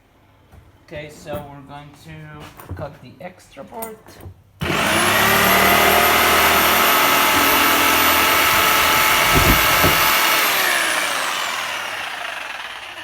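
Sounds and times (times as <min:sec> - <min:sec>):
electric jigsaw cutting wood: 0:04.6 - 0:13.0
low knocks: 0:06.6 - 0:10.4.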